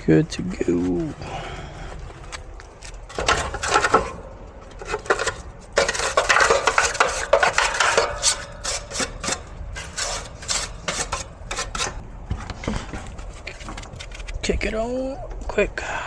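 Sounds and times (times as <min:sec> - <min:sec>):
metal clinking and scraping: 0:02.3 - 0:14.5.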